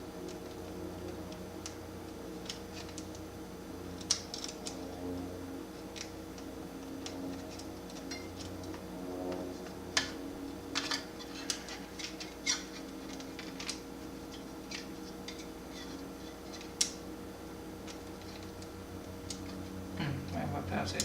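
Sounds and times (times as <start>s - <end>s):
faint steady hum: 0.0s - 21.0s
sharp clicks of laptop parts: 2.4s - 3.2s, 4.0s - 4.9s.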